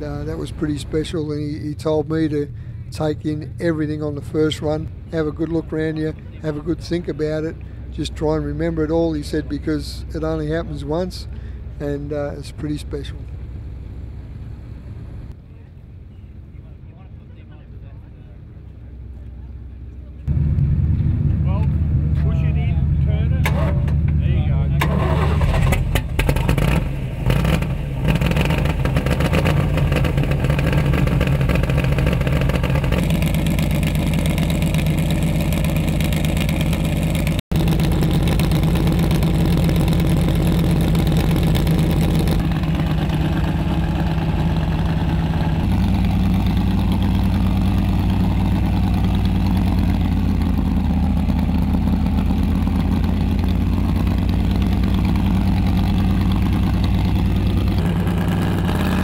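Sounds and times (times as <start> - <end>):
car engine running unevenly: 19.4 - 59.0.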